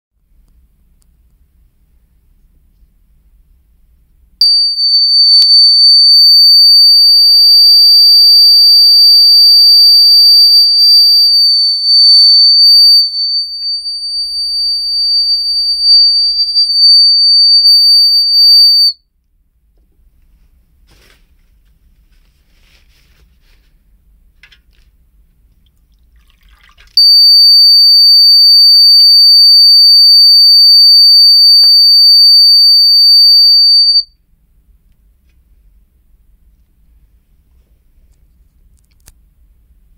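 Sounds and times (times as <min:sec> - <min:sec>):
high-pitched alarm tone: 0:04.4 - 0:19.0, 0:27.0 - 0:34.1.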